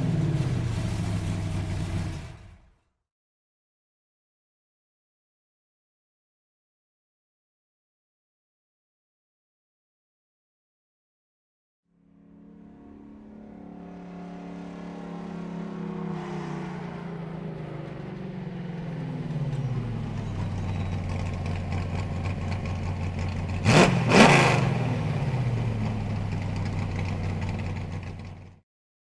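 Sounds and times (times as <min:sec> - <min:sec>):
vehicle engine winding down: 0:00.0 - 0:02.8, 0:12.0 - 0:28.6.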